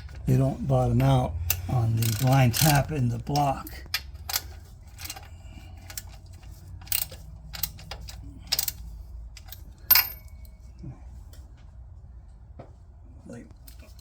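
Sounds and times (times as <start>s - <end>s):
metal tools clinking: 0.0s - 10.6s.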